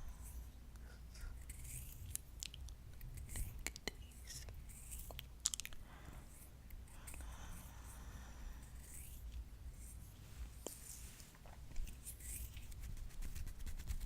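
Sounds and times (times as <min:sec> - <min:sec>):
soft heavy breathing: 0:00.0 - 0:01.6, 0:05.8 - 0:12.5
fingernails scratching a palm: 0:11.9 - 0:14.0.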